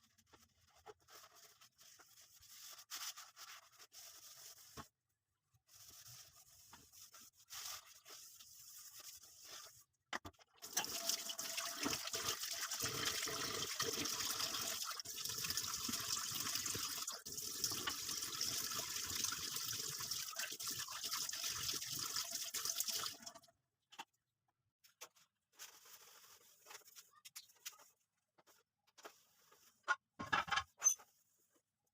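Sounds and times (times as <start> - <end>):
tap water running into sink: 10.6 - 23.4
faint handling sounds: 24.8 - 30.1.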